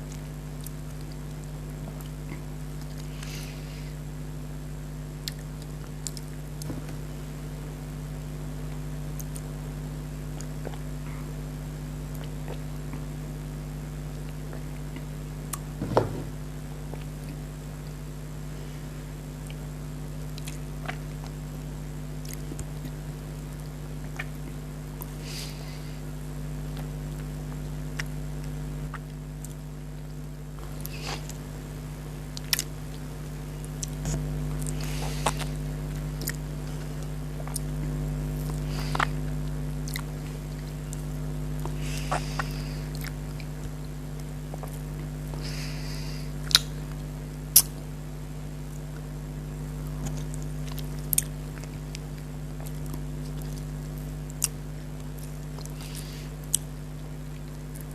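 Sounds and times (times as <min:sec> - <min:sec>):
steady low hum: 0:00.0 - 0:57.9
chewing and wet mouth sounds: 0:05.2 - 0:06.7, 0:20.3 - 0:21.6, 0:22.2 - 0:25.2, 0:26.7 - 0:31.4, 0:32.3 - 0:45.1, 0:46.4 - 0:47.8, 0:49.9 - 0:57.9.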